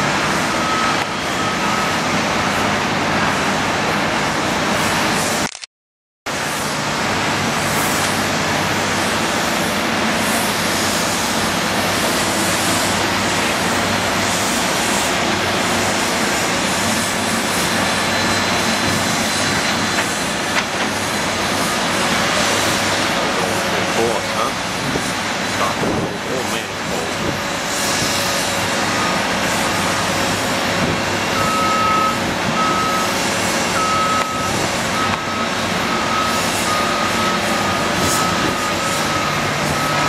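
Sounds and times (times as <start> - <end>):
excavator engine and hydraulics: 0.0 - 5.7, 6.3 - 40.0.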